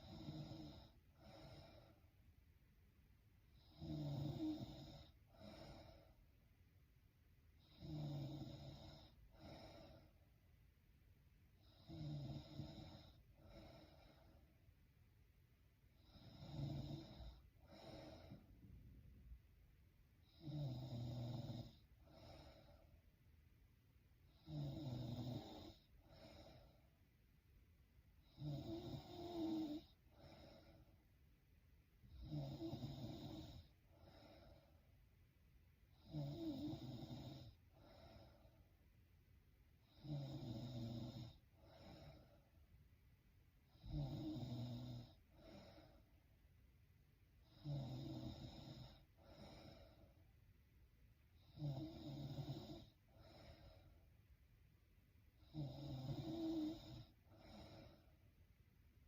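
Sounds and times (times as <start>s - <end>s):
woman snoring: 0.0s - 2.0s, 3.5s - 6.1s, 7.6s - 10.2s, 11.6s - 14.4s, 16.0s - 18.5s, 20.2s - 22.8s, 24.3s - 26.8s, 28.2s - 30.9s, 32.0s - 34.7s, 35.9s - 38.6s, 39.8s - 42.5s, 43.7s - 46.1s, 47.4s - 50.2s, 51.4s - 54.0s, 55.4s - 58.2s.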